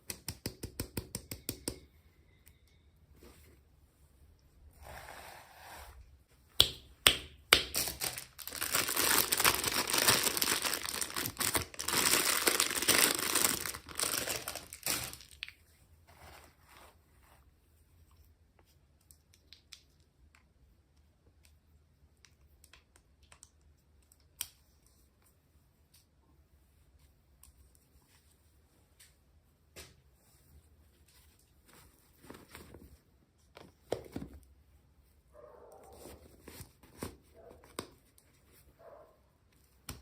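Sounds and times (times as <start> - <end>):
packaging being torn and crinkled: 7.7 - 15.5.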